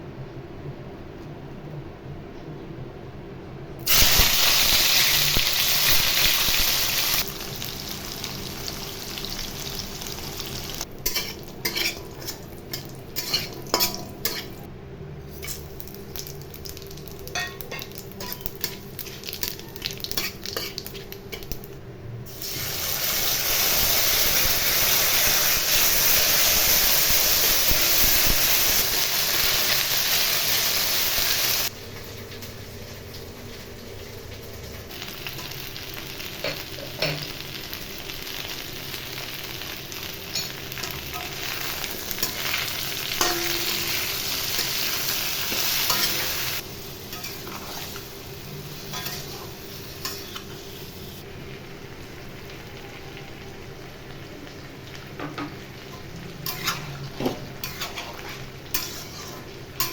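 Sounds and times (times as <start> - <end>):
food sizzling in oil: 3.8 - 14.7, 15.3 - 59.9
spatula scraping a pan: 11.0 - 14.6, 56.4 - 59.9.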